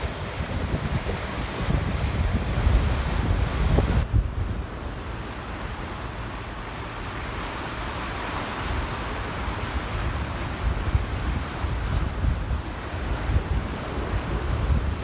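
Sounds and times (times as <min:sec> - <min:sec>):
wind buffeting microphone: 0:00.0 - 0:05.2, 0:09.3 - 0:15.0
rough sea surf: 0:00.0 - 0:15.0.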